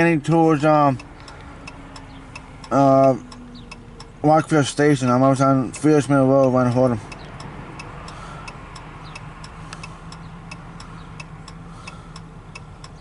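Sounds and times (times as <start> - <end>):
car engine hum: 0.0 - 13.0
car turn signal clicking: 0.0 - 13.0.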